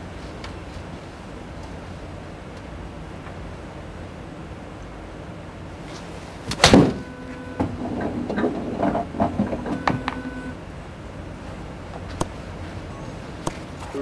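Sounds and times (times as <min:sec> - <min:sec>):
low mechanical hum: 0:00.0 - 0:14.0
golf club striking ball: 0:06.5 - 0:07.7
clicks and knocks: 0:06.5 - 0:10.5.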